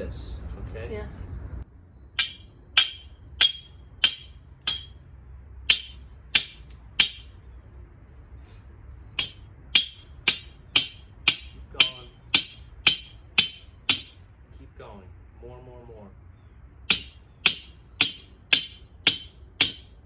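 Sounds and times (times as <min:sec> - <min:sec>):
hammer blows ringing: 0:02.2 - 0:05.0, 0:05.6 - 0:07.4, 0:09.2 - 0:14.2, 0:16.9 - 0:20.0.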